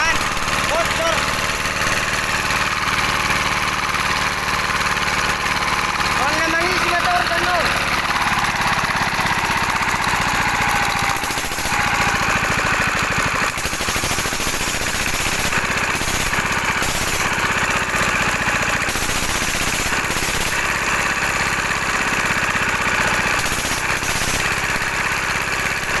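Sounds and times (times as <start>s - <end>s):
single-cylinder diesel engine running: 0.0s - 26.0s.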